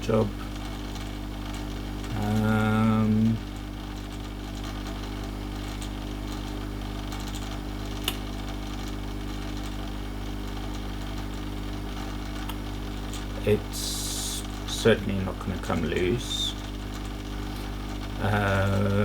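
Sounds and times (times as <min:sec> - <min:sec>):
hot-air tool fan hum: 0:00.0 - 0:19.0
sharp click: 0:08.0 - 0:08.3.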